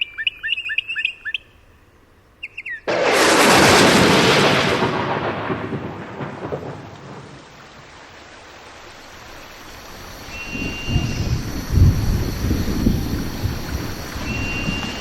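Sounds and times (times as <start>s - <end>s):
loud thunderclap rumbling: 2.9s - 7.6s, 10.4s - 15.0s
rain hissing: 2.9s - 15.0s.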